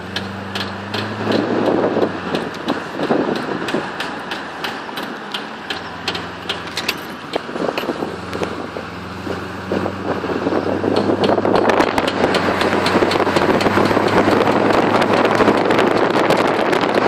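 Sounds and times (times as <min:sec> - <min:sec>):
drive shaft joint clicking: 0:00.0 - 0:08.5, 0:10.8 - 0:15.6
engine and road drone: 0:00.0 - 0:17.0.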